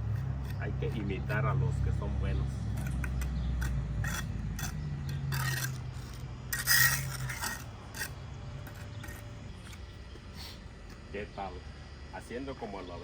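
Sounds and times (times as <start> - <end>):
tool scraping on brick: 0.0 - 10.3.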